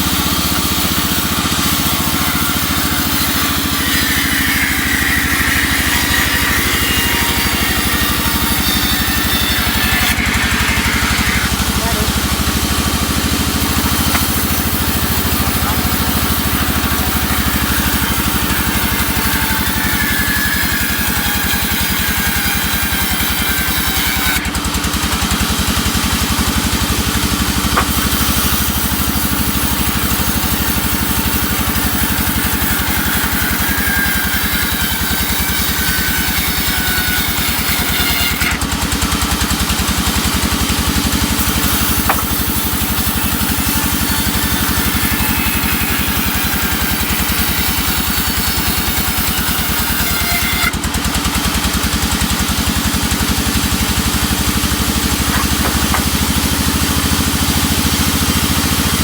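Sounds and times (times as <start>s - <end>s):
sawmill engine running: 0.0s - 59.0s.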